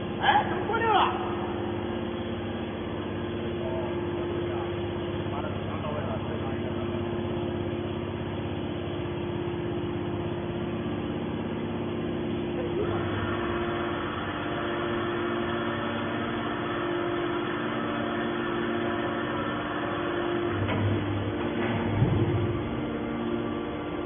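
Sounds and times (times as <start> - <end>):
petrol engine running: 12.3 - 24.0.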